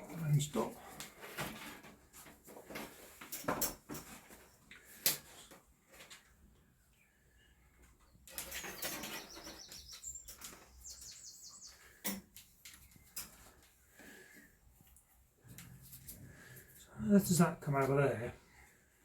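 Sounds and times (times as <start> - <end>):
small bird chirping: 8.0 - 12.1.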